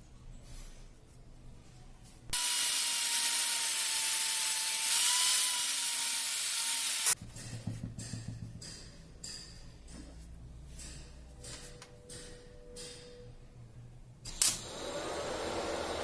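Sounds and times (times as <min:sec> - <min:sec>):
power tool whining: 0:02.4 - 0:07.2.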